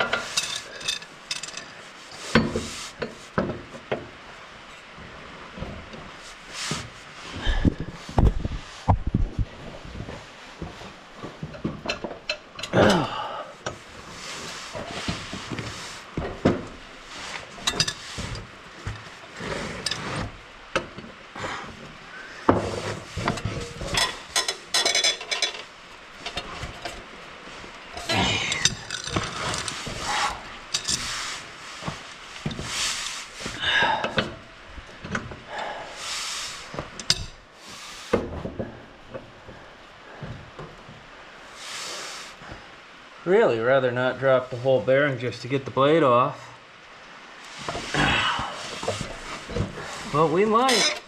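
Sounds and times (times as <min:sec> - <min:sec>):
metal clanks of hand tools: 0:00.0 - 0:04.0, 0:17.6 - 0:19.0, 0:22.5 - 0:27.0, 0:28.0 - 0:31.1, 0:37.0 - 0:37.4, 0:50.6 - 0:51.0.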